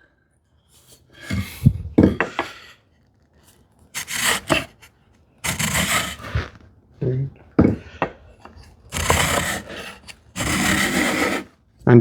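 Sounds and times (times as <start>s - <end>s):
tools rubbing and scraping: 4.0s - 6.6s, 8.4s - 11.5s.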